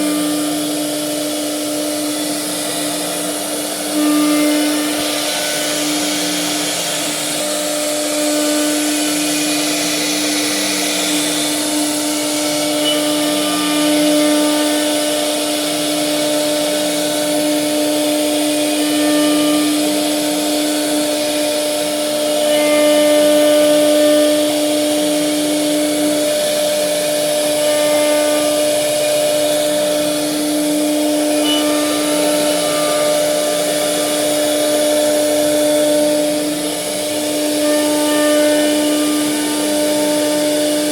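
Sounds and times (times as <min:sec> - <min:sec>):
wood router spindle whine: 0:00.0 - 0:40.9.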